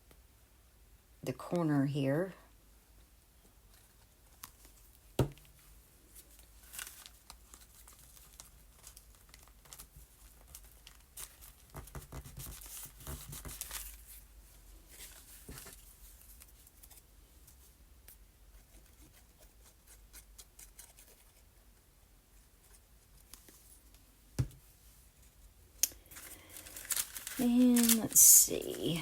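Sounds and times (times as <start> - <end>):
paper rustling: 6.2 - 14.2, 26.0 - 29.0
paper tearing: 26.2 - 29.0.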